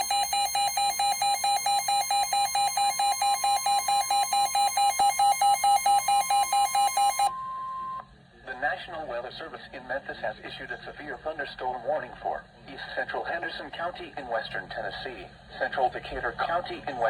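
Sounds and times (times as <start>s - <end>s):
rapid electronic beeping: 0.0s - 7.3s
steady warning tone: 0.0s - 7.6s.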